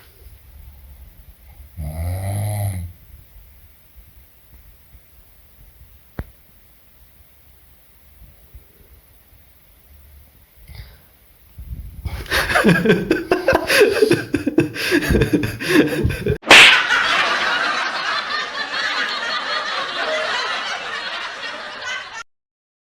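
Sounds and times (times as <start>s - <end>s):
steady noisy sound: 3.0s - 16.4s
people laughing: 12.1s - 22.2s.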